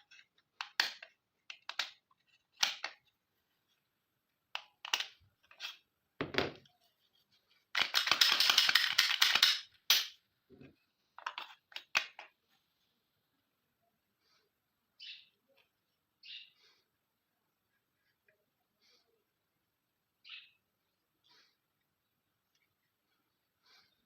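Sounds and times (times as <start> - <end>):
pistol parts clicking: 0.1 - 3.1, 4.5 - 5.8, 7.7 - 10.2, 11.2 - 12.3.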